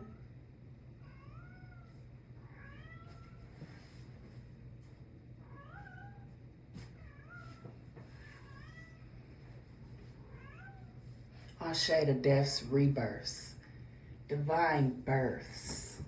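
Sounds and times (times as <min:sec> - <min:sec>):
faint low hum: 0:00.0 - 0:16.0
cat meowing: 0:01.0 - 0:03.4, 0:05.4 - 0:06.3, 0:10.3 - 0:11.0.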